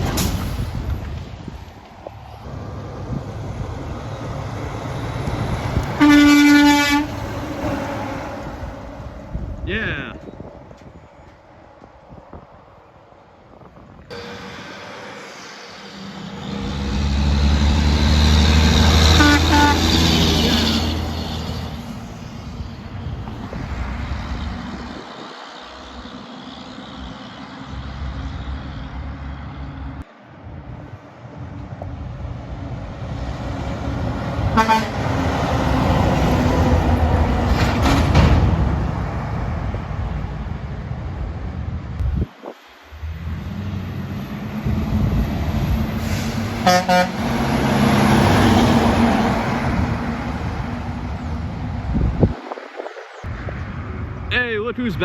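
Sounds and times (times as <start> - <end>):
heavy trucks driving past: 0.0 - 55.0
truck horn toots: 5.8 - 7.3, 19.0 - 21.0, 34.5 - 35.2, 46.6 - 47.6.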